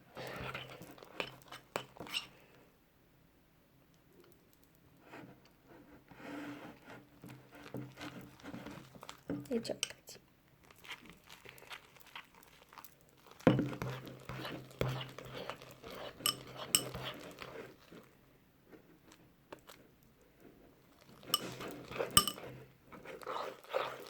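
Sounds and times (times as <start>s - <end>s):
slime squishing when stirred: 0.1s - 2.4s, 7.0s - 10.0s, 10.6s - 24.0s.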